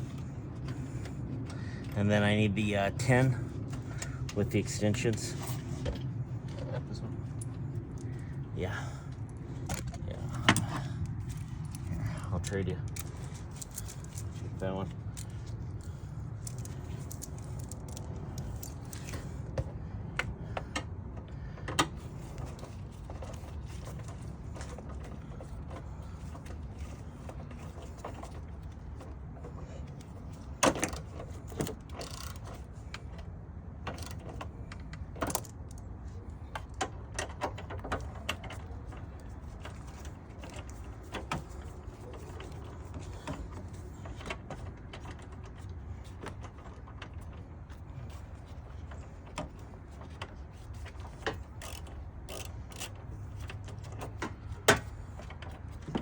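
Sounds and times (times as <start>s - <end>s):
steady low hum: 0.0s - 56.0s
metal tools clicking and clinking: 9.2s - 19.3s.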